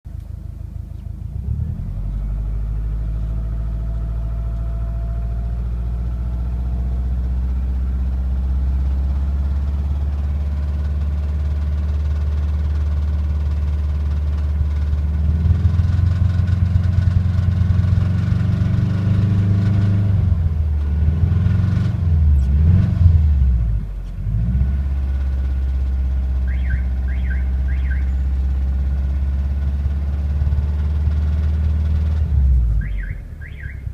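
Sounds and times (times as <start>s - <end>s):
engine revving: 14.6s - 33.9s.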